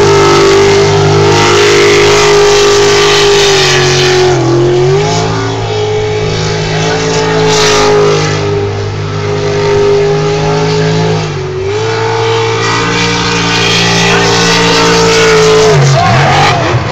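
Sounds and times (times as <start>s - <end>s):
boat engine at high revs: 0.0s - 16.9s.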